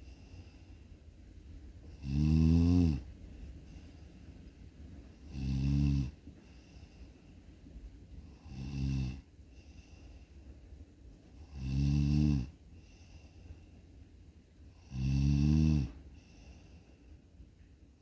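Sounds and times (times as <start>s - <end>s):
faint breathing: 0.0s - 2.0s, 3.0s - 11.6s, 12.5s - 15.0s, 15.8s - 18.0s
person snoring: 1.9s - 3.0s, 5.3s - 6.2s, 8.3s - 9.2s, 11.4s - 12.5s, 14.8s - 16.0s.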